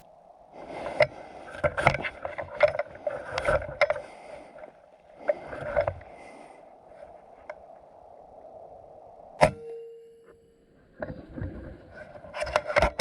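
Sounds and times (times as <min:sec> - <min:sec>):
short ringing tone: 0:09.4 - 0:10.7.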